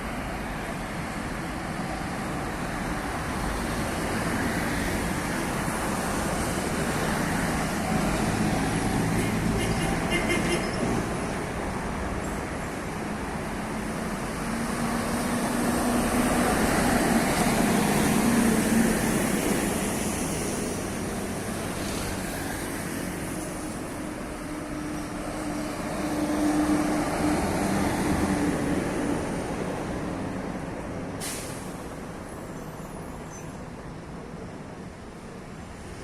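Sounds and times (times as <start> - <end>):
road traffic passing: 0.0 - 36.0.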